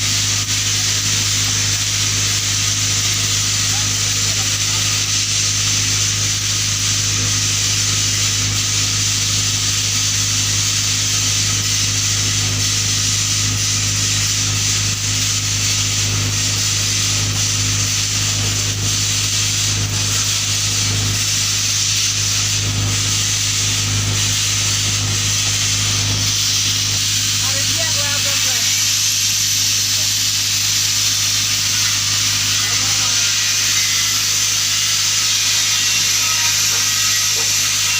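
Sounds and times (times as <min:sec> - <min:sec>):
welding arc buzzing hiss: 0:00.0 - 0:37.9.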